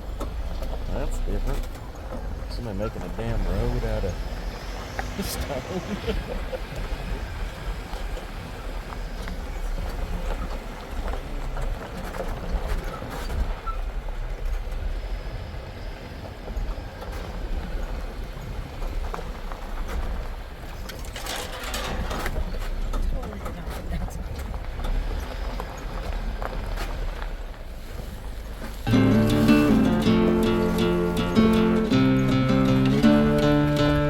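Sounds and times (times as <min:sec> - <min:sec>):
engine and road rumble: 0:00.0 - 0:34.0
tyres knocking and rattling on stones: 0:19.1 - 0:25.8.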